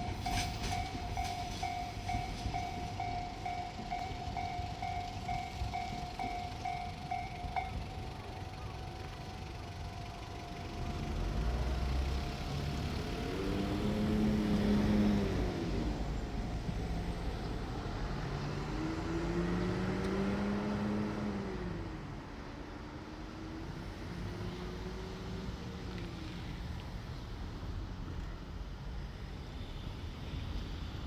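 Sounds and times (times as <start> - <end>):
level-crossing warning bell ringing: 0.0 - 13.4
diesel railcar engine revving: 0.0 - 26.8.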